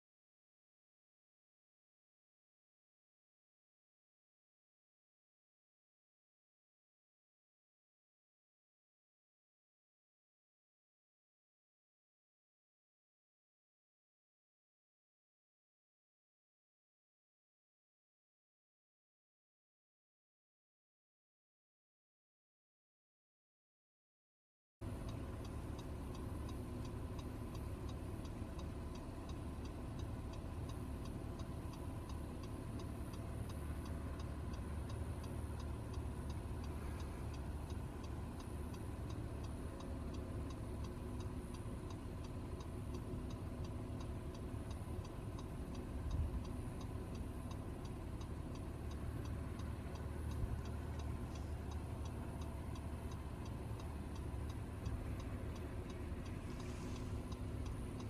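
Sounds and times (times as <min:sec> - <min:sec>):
car engine and road noise: 0:24.8 - 0:58.0.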